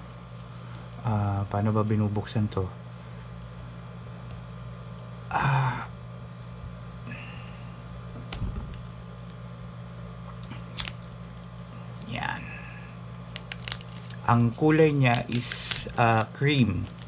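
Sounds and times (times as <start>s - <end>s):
steady low hum: 0.0s - 17.0s
packaging scraping rustle: 13.3s - 14.2s, 14.9s - 17.0s.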